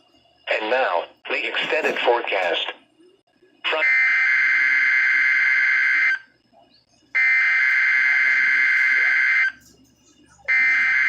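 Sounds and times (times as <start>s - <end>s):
buzzy digital data bursts: 7.2s - 9.7s.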